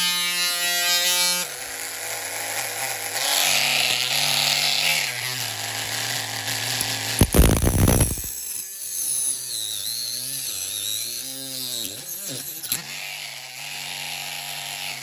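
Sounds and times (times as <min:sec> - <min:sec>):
small power tool whining: 0:00.0 - 0:15.0
grinding hiss: 0:06.9 - 0:08.6.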